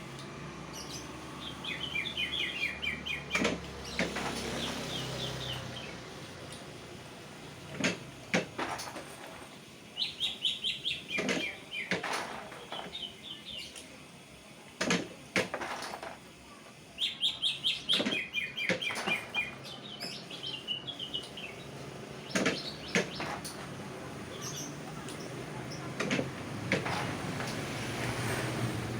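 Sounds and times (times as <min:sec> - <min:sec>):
sharp clicks and knocks: 0:03.3 - 0:04.7, 0:22.3 - 0:23.8, 0:24.5 - 0:28.3.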